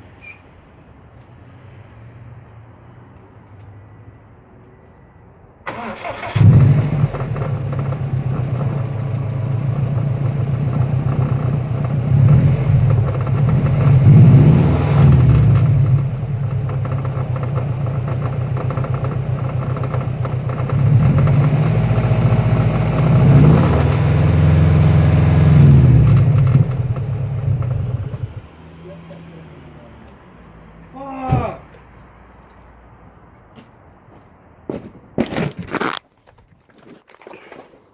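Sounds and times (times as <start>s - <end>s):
car engine knocking and revving: 6.4s - 28.5s.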